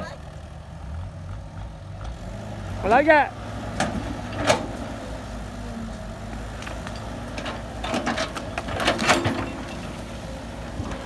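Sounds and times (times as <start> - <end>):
heavy diesel engine running: 0.0 - 11.0
clattering metal knocks: 6.5 - 10.2.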